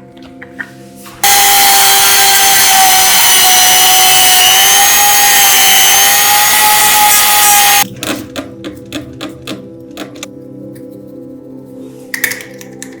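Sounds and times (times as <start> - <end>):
power tool grinding metal: 1.2 - 7.9.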